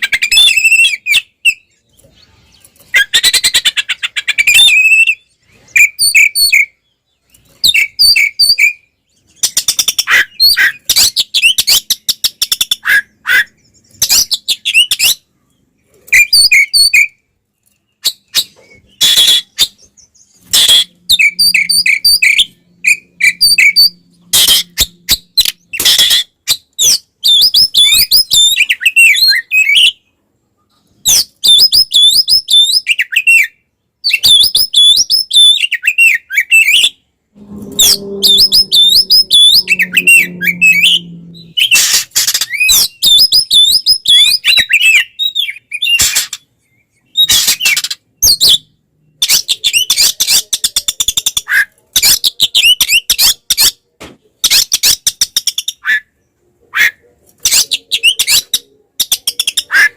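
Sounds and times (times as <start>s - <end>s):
songbird whistling and trilling: 0.0s - 1.8s, 2.7s - 15.3s, 16.1s - 17.2s, 17.8s - 30.0s, 31.0s - 53.7s
harsh rasping bird calls: 18.0s - 29.9s, 34.2s - 46.5s.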